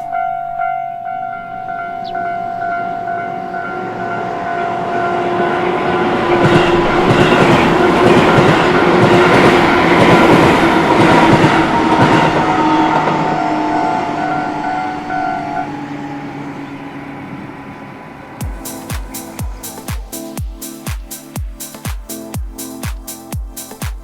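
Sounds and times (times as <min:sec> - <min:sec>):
level-crossing warning bell: 0:00.0 - 0:21.7
train wheels clattering over rails: 0:05.6 - 0:13.5.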